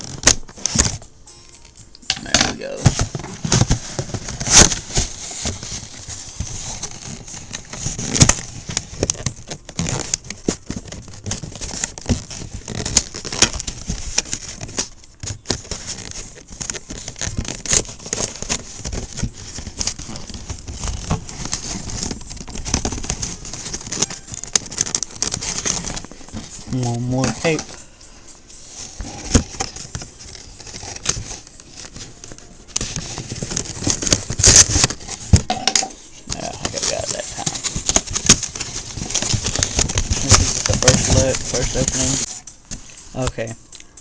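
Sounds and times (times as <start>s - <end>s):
scissors cutting packing tape: 6.6s - 26.3s.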